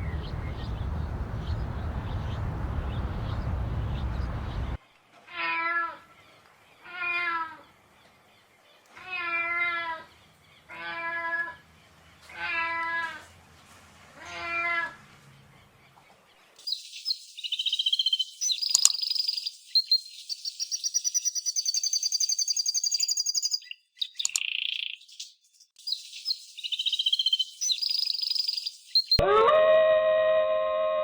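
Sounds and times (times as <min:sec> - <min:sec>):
songbird chirps and trills: 0:00.0 - 0:04.8, 0:16.6 - 0:29.2.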